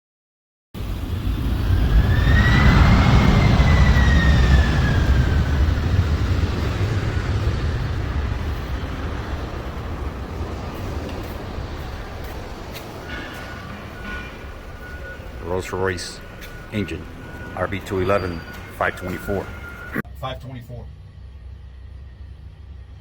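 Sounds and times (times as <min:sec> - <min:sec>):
jet aircraft rumble: 0:00.8 - 0:23.0
turbine whine: 0:00.8 - 0:23.0.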